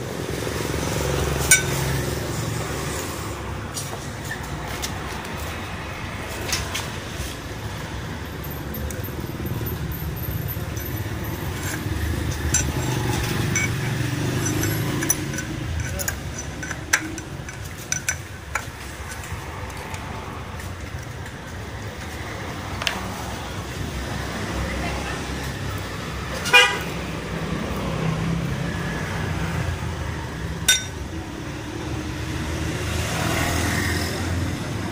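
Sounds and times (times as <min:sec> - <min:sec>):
sharp metallic clinks: 0:01.4 - 0:02.1, 0:08.3 - 0:19.8, 0:30.7 - 0:31.0.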